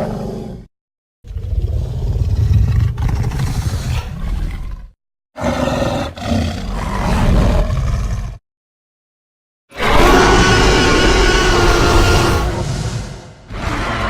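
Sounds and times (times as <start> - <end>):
monster roar: 9.7 - 14.0.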